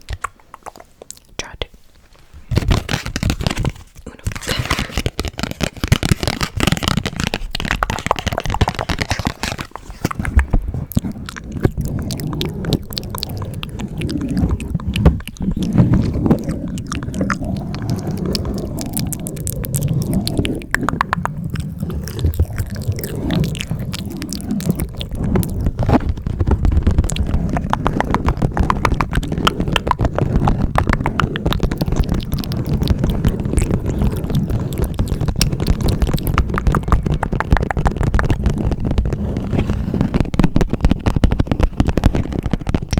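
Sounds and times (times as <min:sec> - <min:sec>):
mouth sounds: 0:00.0 - 0:01.8, 0:07.4 - 0:38.8
fingers tapping on cards: 0:02.6 - 0:42.9.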